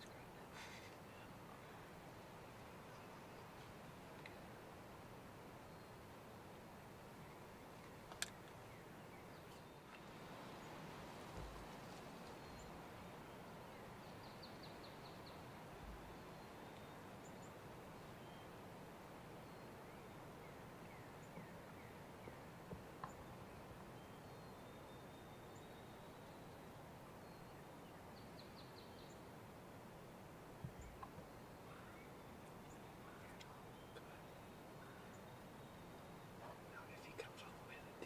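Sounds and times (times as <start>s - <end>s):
faint steady hiss: 0.0s - 38.0s
distant songbirds trilling: 6.8s - 29.4s, 30.5s - 38.0s.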